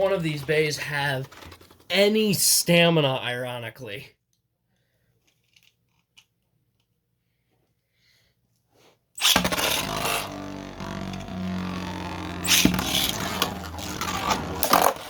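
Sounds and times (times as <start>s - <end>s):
spinning tops humming: 9.2s - 15.0s
knocks and scrapes of colliding tops: 12.4s - 15.0s.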